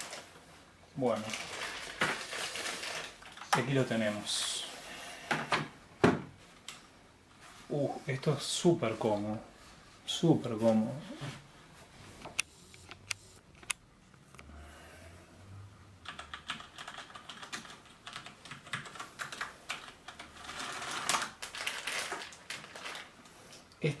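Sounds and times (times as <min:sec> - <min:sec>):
mechanical keyboard typing: 0:16.0 - 0:21.0.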